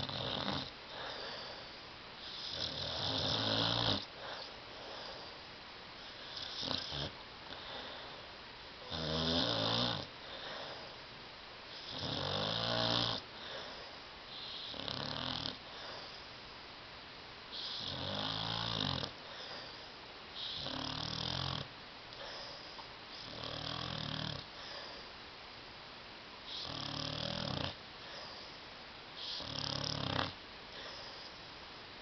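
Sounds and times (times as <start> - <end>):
dog snoring: 0.0 - 5.3, 6.0 - 7.9, 8.8 - 10.9, 11.7 - 16.2, 17.5 - 25.0, 26.5 - 28.6, 29.2 - 31.4.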